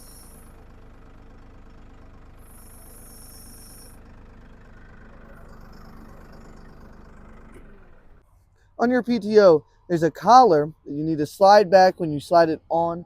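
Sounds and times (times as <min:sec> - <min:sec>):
high-pitched buzz: 0:00.0 - 0:00.5, 0:02.4 - 0:04.0
tractor diesel engine running: 0:00.0 - 0:13.0.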